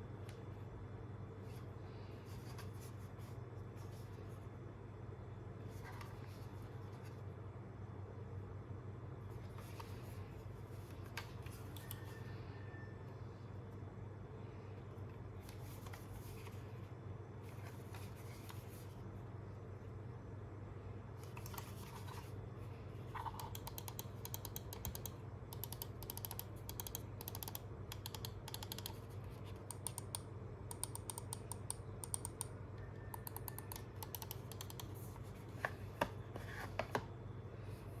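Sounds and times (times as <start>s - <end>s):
mouse buttons clicking: 23.2s - 29.0s, 29.6s - 32.5s, 33.1s - 35.1s.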